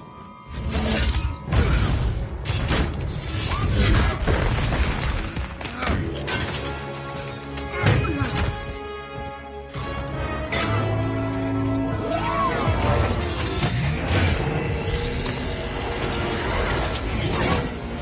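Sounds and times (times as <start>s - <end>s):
dramatic film music: 0.0s - 18.0s.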